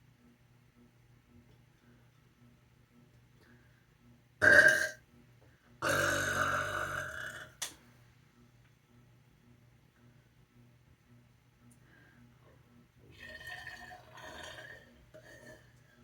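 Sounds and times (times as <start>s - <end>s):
person burping: 4.4s - 5.0s, 5.8s - 7.6s.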